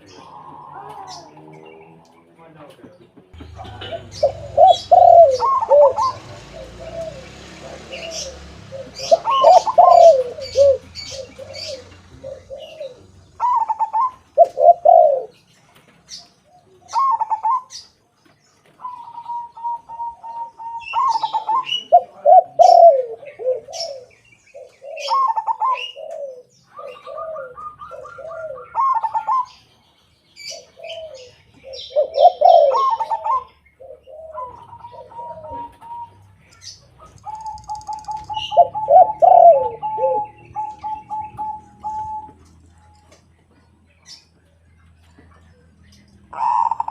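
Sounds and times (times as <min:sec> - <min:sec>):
doves cooing: 0:00.0 - 0:29.8, 0:30.4 - 0:46.9
high bird chirps: 0:34.4 - 0:43.2.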